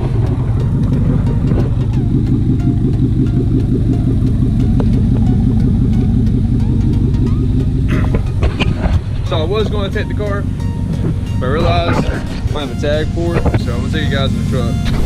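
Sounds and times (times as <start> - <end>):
truck engine idling: 0.0 - 15.0.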